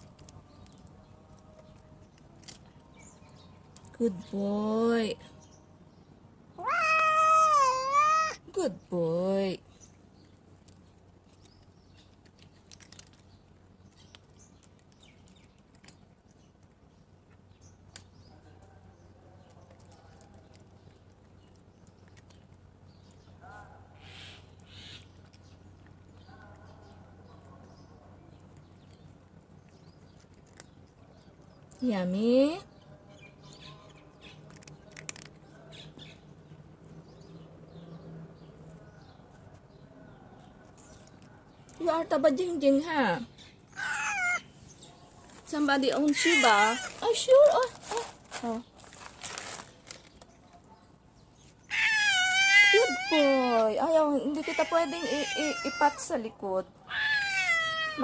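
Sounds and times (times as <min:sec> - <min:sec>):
small birds chirping: 0:00.0 - 0:58.0
cat chewing clicks: 0:34.3 - 0:35.6.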